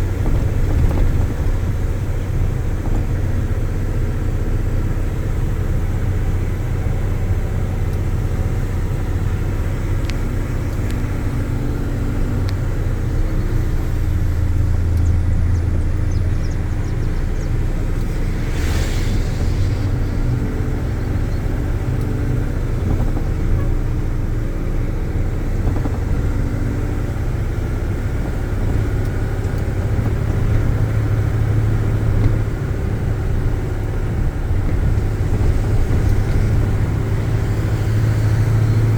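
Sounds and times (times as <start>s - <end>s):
car engine and road rumble: 0.0s - 38.9s
brief hiss: 17.7s - 21.5s.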